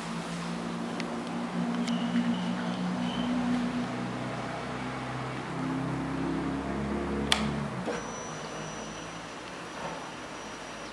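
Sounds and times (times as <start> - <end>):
sharp click: 7.3 - 7.5.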